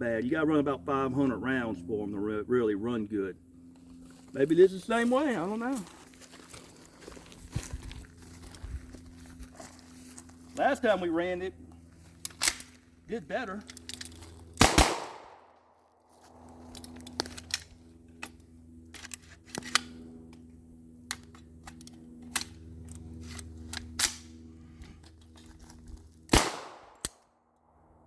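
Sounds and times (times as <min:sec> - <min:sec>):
submachine gun shots: 0:14.6 - 0:15.5, 0:26.3 - 0:27.0.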